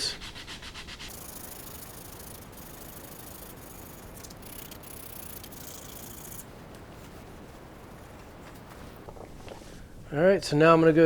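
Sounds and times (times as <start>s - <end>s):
sandpaper scratching on metal: 0.0s - 8.4s.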